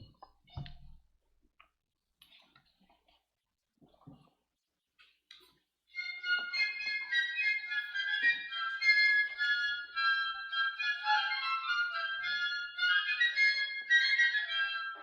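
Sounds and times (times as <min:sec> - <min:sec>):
flutes playing quick melody: 0:06.0 - 0:15.0.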